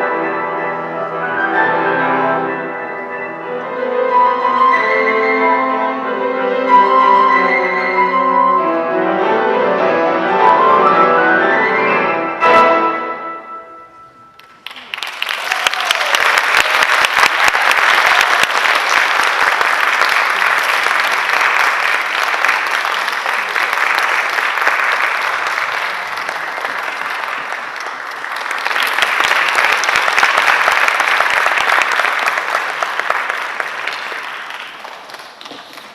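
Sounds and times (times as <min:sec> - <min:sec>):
audience applauding: 0:14.4 - 0:35.9.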